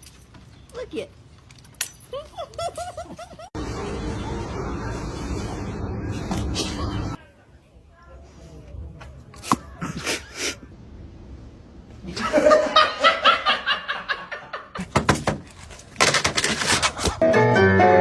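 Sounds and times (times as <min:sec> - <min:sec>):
person laughing: 0:02.1 - 0:03.5.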